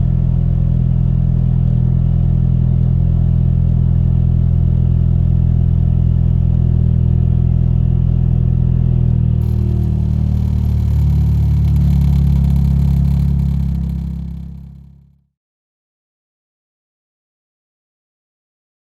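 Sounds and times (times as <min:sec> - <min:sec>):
car engine idling: 0:09.4 - 0:15.1.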